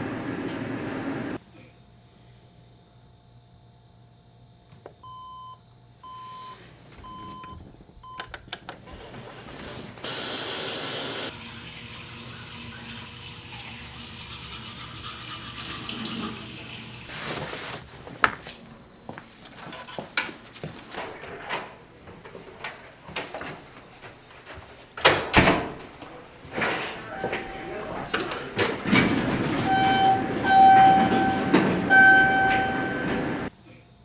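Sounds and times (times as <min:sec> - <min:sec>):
water running: 0:10.0 - 0:17.9
alarm clock beeping: 0:29.7 - 0:33.2.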